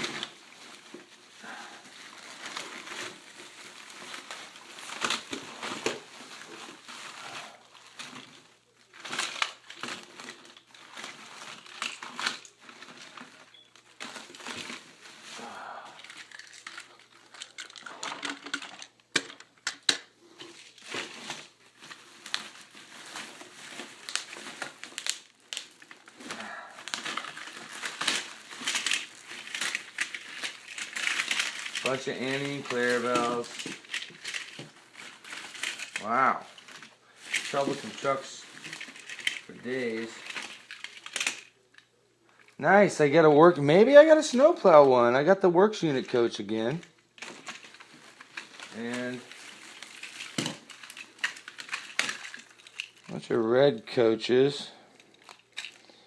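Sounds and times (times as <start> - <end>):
plastic bags crinkling: 0.0 - 56.0
toy trains clicking together: 16.0 - 20.0.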